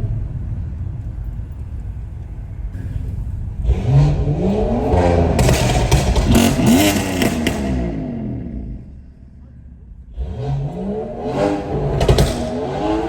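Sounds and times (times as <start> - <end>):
exhaust crackles: 0.0 - 13.0
car engine accelerating hard: 2.7 - 13.0.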